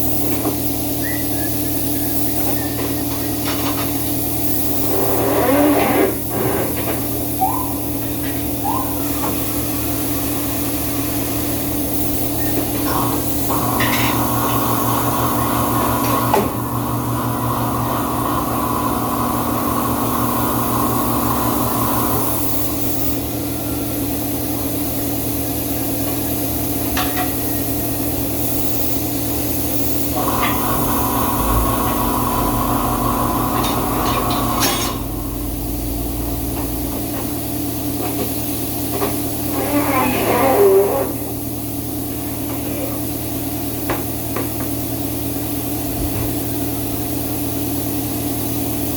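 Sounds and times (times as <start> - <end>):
steady shop hum: 0.0 - 48.9
tire-changing machine motor: 4.7 - 8.1, 30.1 - 37.5.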